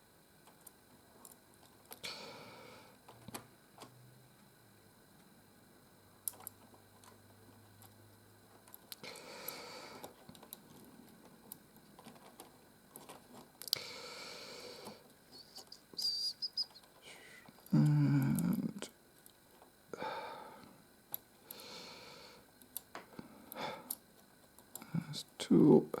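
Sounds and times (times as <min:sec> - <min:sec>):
rustling of wires and pieces: 0:10.0 - 0:13.8.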